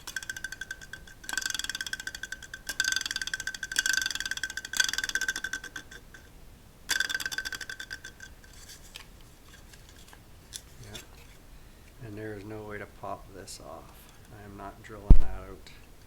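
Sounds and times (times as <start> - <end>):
fan blade ticking rattle: 0.0 - 11.4
heater fan motor whine: 0.0 - 16.0.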